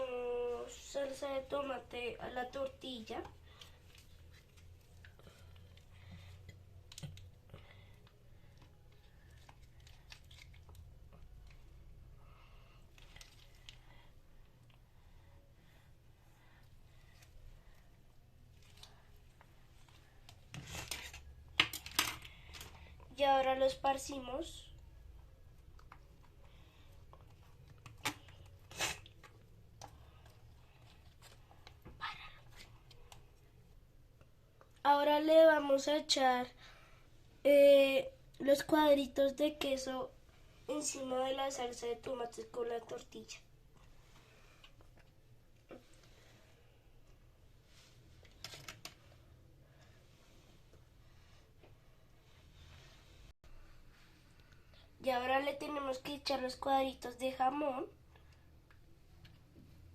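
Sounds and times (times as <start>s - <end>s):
faint clicks and taps: 2.6s - 11.7s, 24.8s - 28.6s.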